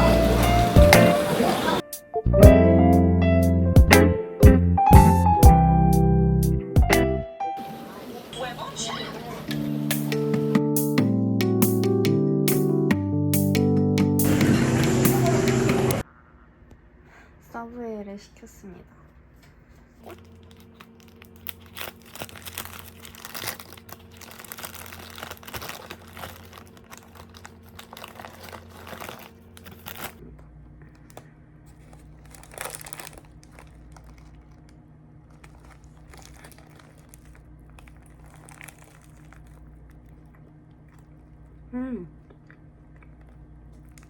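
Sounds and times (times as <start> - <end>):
food wrapping crinkling: 19.8 - 44.0
steady low hum: 23.6 - 44.0.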